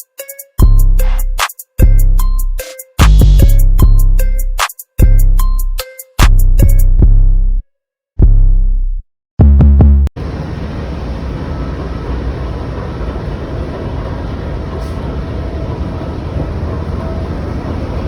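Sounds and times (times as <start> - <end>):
hip-hop music with deep bass: 0.0 - 7.4.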